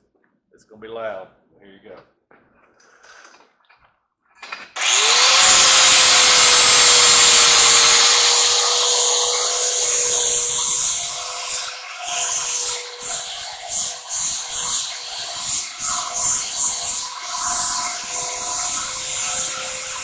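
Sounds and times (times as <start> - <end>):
angle grinder grinding metal: 4.7 - 20.0.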